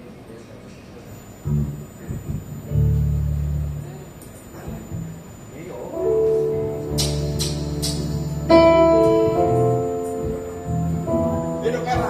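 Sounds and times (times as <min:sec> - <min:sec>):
band playing held chords: 0:01.1 - 0:12.0
cymbal strikes: 0:06.0 - 0:12.0.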